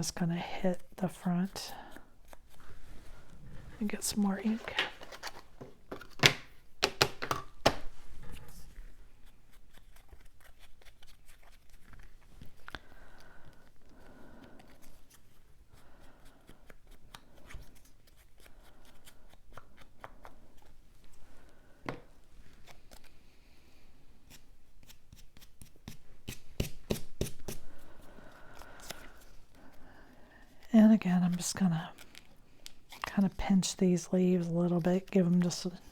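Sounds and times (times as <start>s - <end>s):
paper rustling: 3.9s - 6.2s.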